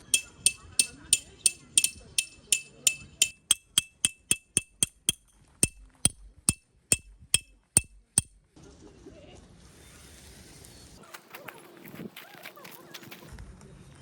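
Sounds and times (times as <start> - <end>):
hammer striking metal tent peg: 0.0 - 8.4.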